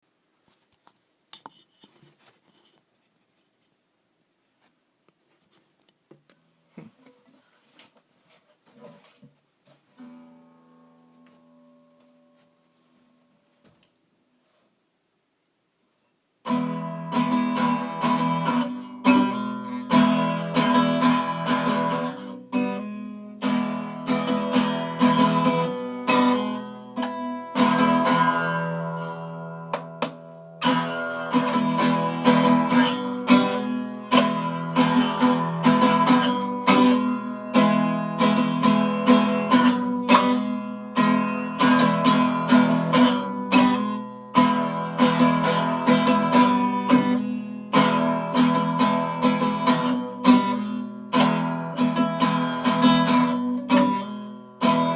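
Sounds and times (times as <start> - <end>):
guitar chords strummed: 16.4 - 54.9.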